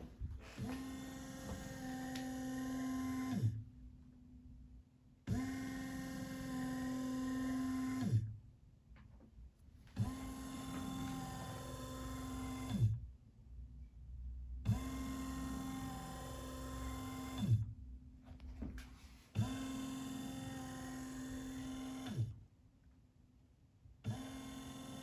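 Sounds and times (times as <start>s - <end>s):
ventilator motor whine: 0.0s - 3.7s, 9.9s - 13.0s.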